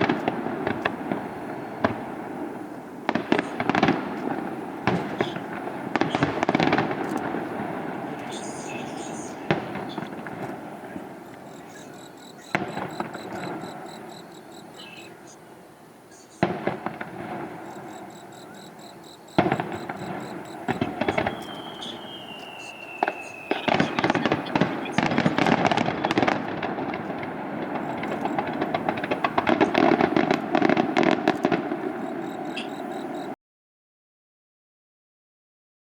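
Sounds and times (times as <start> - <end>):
fireworks bursts and crackle: 0.0 - 33.4
firework whistle falling: 8.1 - 15.4, 16.2 - 33.4.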